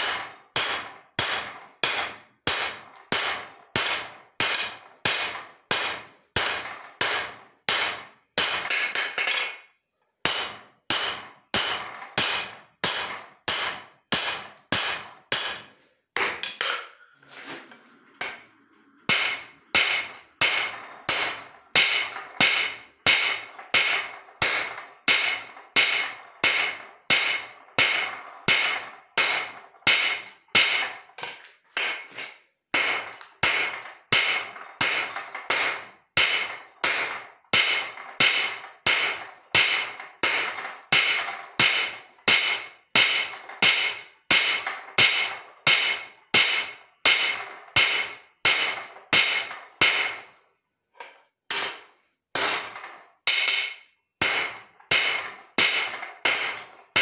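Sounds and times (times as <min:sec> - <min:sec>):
hammer striking steel on anvil: 0:00.0 - 0:17.0, 0:18.2 - 0:18.5, 0:19.1 - 0:50.4, 0:51.1 - 0:57.0.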